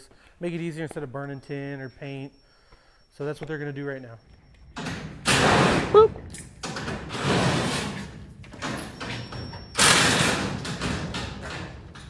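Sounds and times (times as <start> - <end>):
sheet metal banging and rattling: 4.7 - 12.0.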